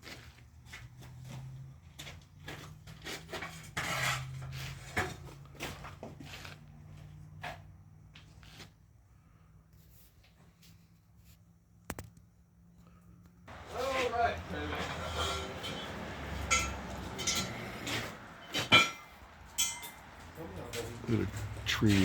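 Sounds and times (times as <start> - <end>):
wooden timbers knocking and scraping: 13.5 - 19.4
low engine hum: 13.5 - 22.0.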